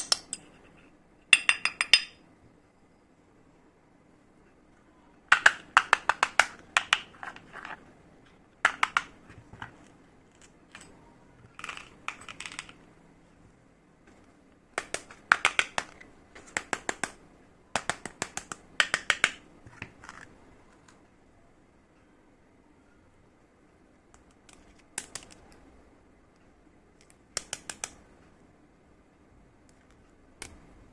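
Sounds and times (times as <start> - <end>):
plastic toy pieces clicking: 5.3 - 7.8, 11.5 - 12.8, 14.8 - 17.2.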